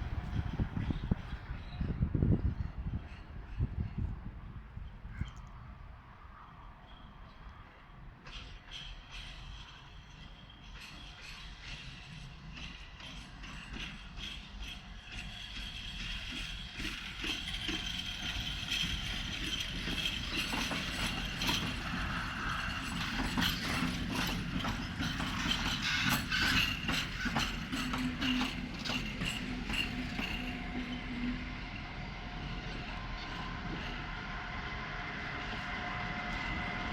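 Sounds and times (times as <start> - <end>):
steady locomotive hum: 0.0 - 36.9
train wheels clattering over rail joints: 8.2 - 31.4.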